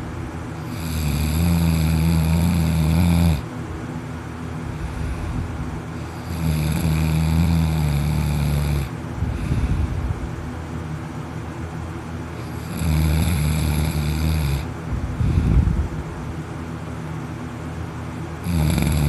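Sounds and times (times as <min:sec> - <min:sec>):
person snoring: 0:00.6 - 0:03.4, 0:04.7 - 0:10.1, 0:12.4 - 0:15.8, 0:18.4 - 0:19.0
quiet breathing: 0:04.6 - 0:06.4, 0:07.4 - 0:10.3, 0:14.5 - 0:15.9.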